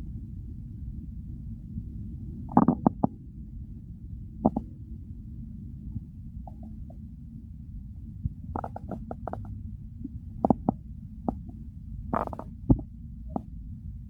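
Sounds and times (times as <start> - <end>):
steady low rumble: 0.0 - 14.0
stomach gurgling: 2.5 - 3.1, 4.4 - 4.7, 6.5 - 7.0, 8.6 - 13.5.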